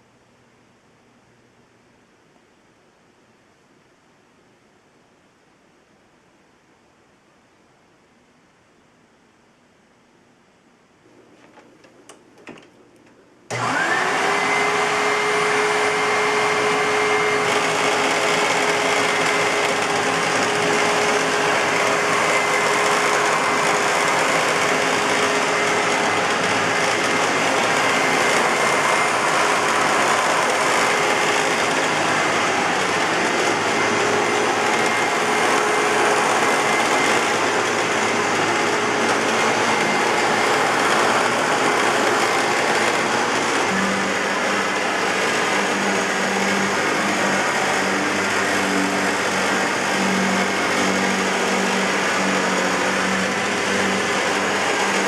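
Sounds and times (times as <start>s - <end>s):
upright vacuum cleaner running: 11.1s - 55.0s.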